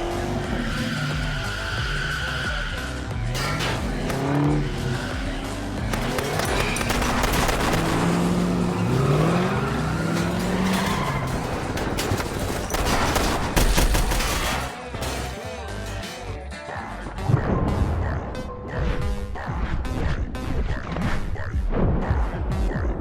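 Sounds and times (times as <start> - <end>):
tires squealing: 0.0 - 17.2
car engines revving: 0.0 - 17.4
dramatic music: 0.0 - 23.0.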